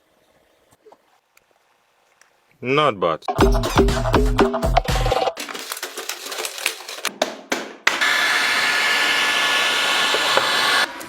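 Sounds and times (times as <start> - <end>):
small electric motor whining: 8.0 - 11.0.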